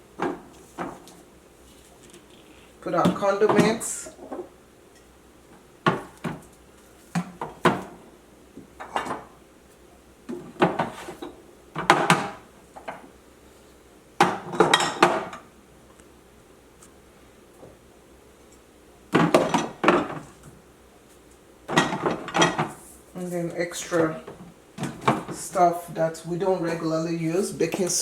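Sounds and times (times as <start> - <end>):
bottles and jars clunking on shelves: 0.2 - 1.2, 3.0 - 4.5, 5.8 - 6.5, 7.1 - 8.0, 8.6 - 9.4, 10.3 - 13.1, 14.2 - 15.5, 19.1 - 20.6, 21.7 - 22.8, 23.9 - 25.6.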